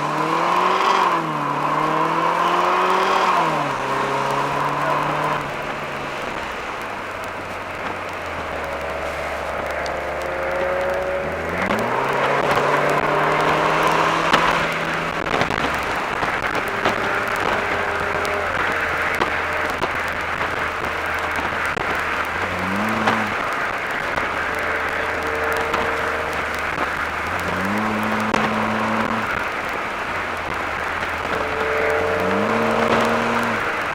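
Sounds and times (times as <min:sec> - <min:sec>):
car engine pulling: 0:00.0 - 0:33.9
tyre and wind noise: 0:00.0 - 0:33.9.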